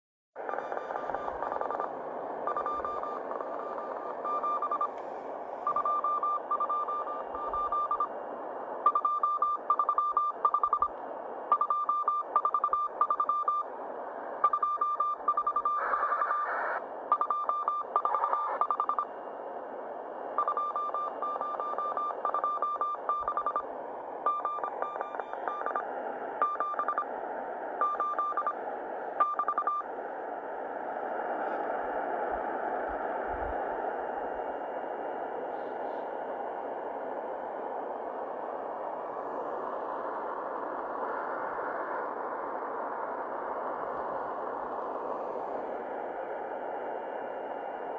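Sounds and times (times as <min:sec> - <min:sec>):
radio band hiss: 0:00.4 - 0:47.9
static crackles: 0:00.4 - 0:47.9
morse code beeps: 0:00.5 - 0:01.9, 0:02.5 - 0:05.0, 0:05.6 - 0:08.1, 0:08.8 - 0:10.9, 0:11.5 - 0:13.7, 0:14.4 - 0:16.5, 0:17.1 - 0:19.1, 0:20.4 - 0:27.1, 0:27.8 - 0:28.6, 0:29.2 - 0:29.9.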